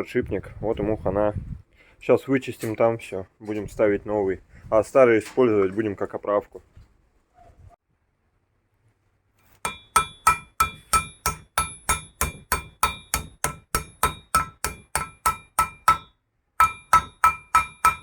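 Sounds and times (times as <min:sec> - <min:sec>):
hammer clanging on metal: 0:09.6 - 0:18.0.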